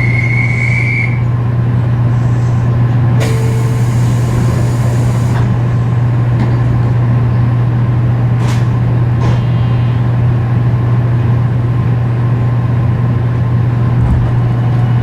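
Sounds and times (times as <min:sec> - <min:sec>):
high whine: 0:00.0 - 0:15.0
train deep low hum: 0:00.0 - 0:15.0
hiss: 0:03.2 - 0:05.5.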